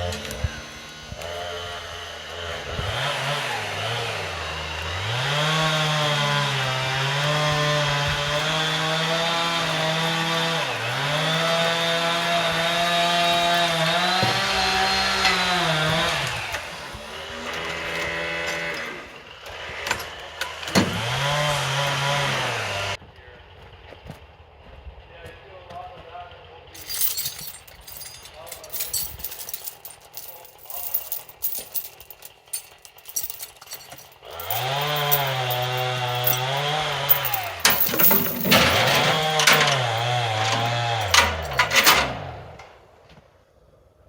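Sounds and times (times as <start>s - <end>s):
chainsaw cutting wood: 2.8s - 16.0s.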